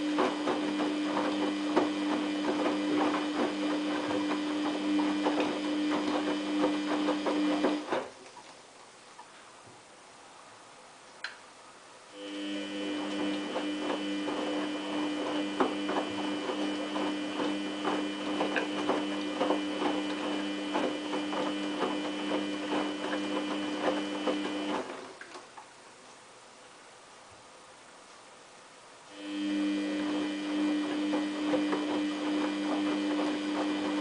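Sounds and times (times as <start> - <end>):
washing machine motor humming: 0.0 - 8.5, 12.2 - 25.8, 29.1 - 34.0
items tumbling and splashing in drum: 0.0 - 8.7, 12.7 - 25.6, 29.9 - 34.0.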